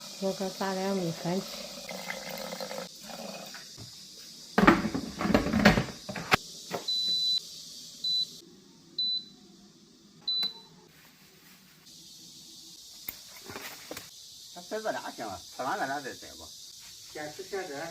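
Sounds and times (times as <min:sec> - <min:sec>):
objects clattering: 0:04.6 - 0:06.3
rice cooker beeping: 0:06.8 - 0:07.4, 0:08.1 - 0:08.3, 0:09.0 - 0:09.3, 0:10.2 - 0:10.7.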